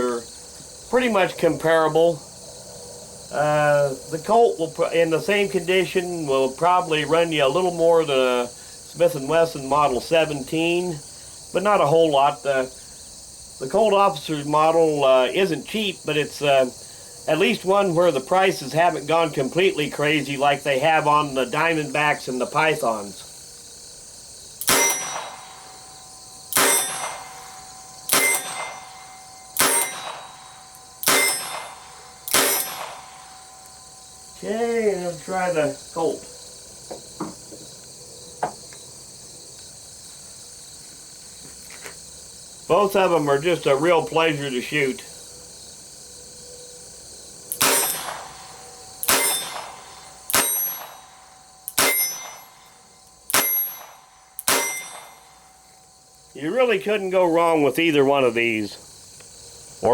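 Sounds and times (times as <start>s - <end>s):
revolver shots: 24.6s - 33.9s, 47.5s - 55.5s.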